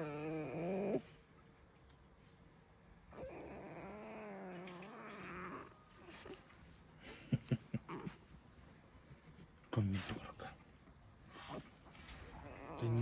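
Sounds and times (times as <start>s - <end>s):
fox whining: 0.0s - 1.2s, 3.1s - 6.5s, 11.3s - 13.0s.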